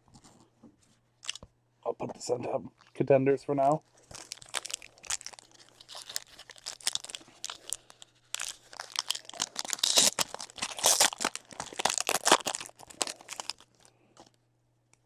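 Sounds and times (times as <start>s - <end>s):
foil wrapper tearing and crinkling: 4.0s - 13.9s.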